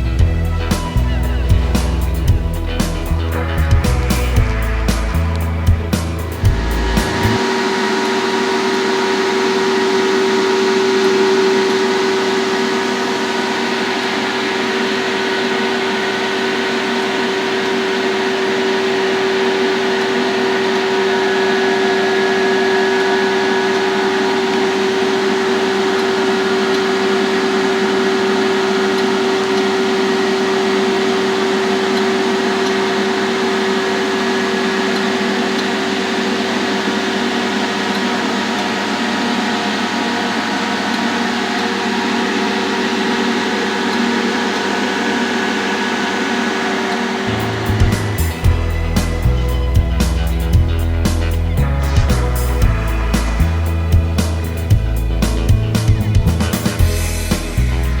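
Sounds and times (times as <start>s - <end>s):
constant mid-pitched tone: 0.0s - 36.5s
laser machine hum and hiss: 0.3s - 57.7s.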